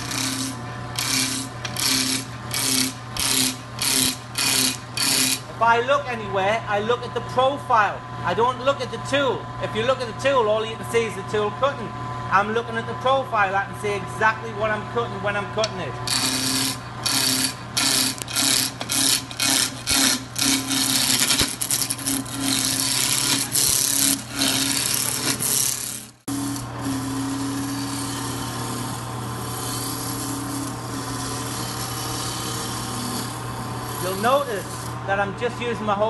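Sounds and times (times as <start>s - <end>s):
lathe tool cutting wood: 0.0s - 5.6s, 15.6s - 35.1s
lathe humming: 0.0s - 6.0s, 11.4s - 36.0s.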